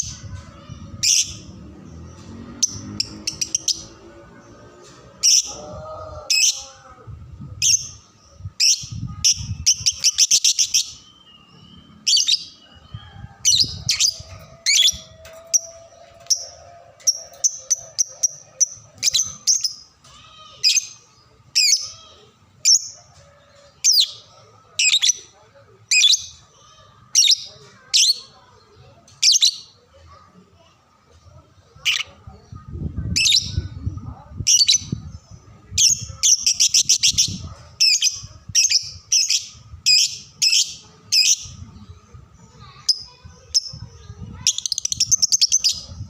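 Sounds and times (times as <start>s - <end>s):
bird chirping: 7.7s - 22.2s.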